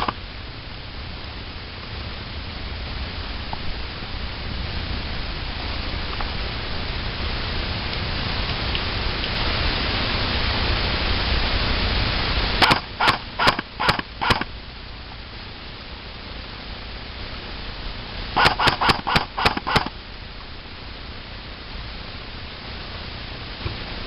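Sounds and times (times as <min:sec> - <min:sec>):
steady hiss: 0:00.0 - 0:24.0
airsoft gun shots: 0:12.6 - 0:14.5, 0:18.4 - 0:20.0.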